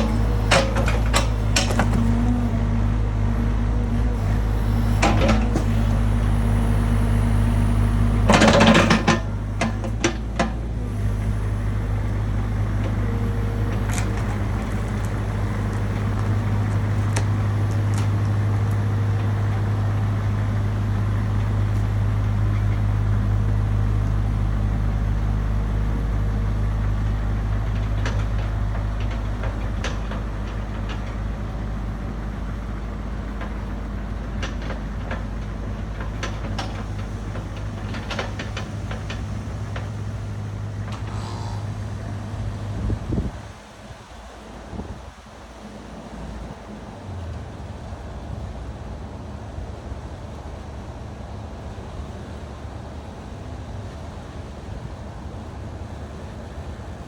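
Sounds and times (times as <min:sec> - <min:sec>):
knocks and clunks: 0:00.0 - 0:43.4
diesel engine running: 0:00.0 - 0:57.0.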